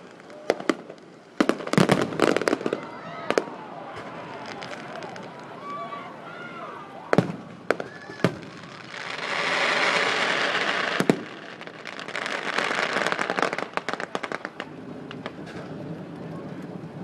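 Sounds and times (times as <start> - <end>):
firework bangs: 0.0 - 5.8, 7.0 - 17.0
firework hiss: 7.2 - 17.0
crackling pops: 10.9 - 17.0.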